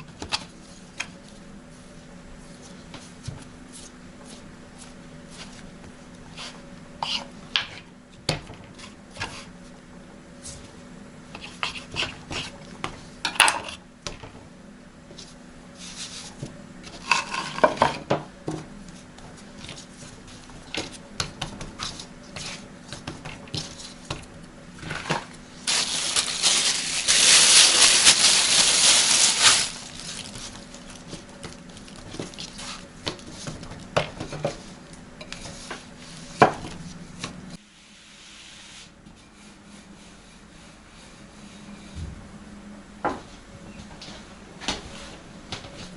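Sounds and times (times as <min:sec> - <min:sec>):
low steady hum: 0:09.6 - 0:38.1.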